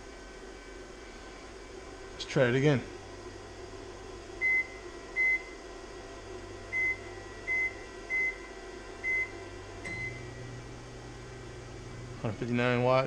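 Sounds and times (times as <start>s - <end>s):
microwave oven humming: 0.0s - 13.0s
microwave keypad beeps: 9.0s - 9.3s, 9.9s - 10.3s.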